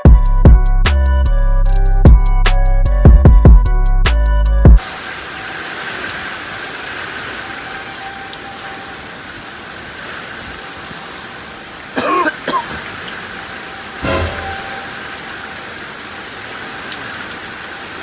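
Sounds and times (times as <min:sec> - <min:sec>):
steady rain: 0:04.8 - 0:18.0.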